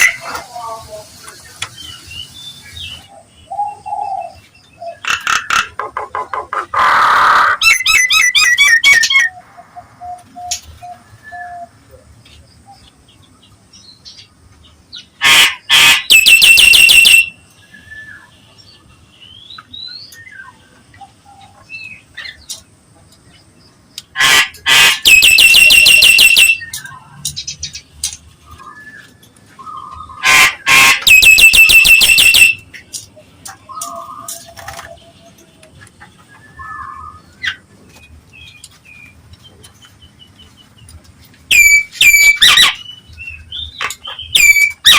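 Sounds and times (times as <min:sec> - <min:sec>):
faint bird chirps and whistles: 0:07.6 - 0:09.4, 0:16.0 - 0:18.5, 0:25.0 - 0:27.2, 0:28.4 - 0:30.2, 0:31.1 - 0:32.7, 0:41.5 - 0:44.9
myna calling with harsh squawks: 0:15.2 - 0:17.3, 0:24.2 - 0:26.6, 0:30.2 - 0:32.6, 0:41.5 - 0:42.8, 0:44.4 - 0:44.9.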